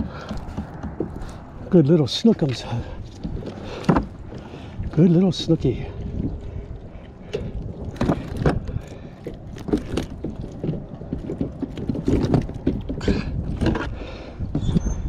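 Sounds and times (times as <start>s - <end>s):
fish thumping in a kayak: 0.0s - 15.0s
wind rumble on microphone: 0.0s - 15.0s.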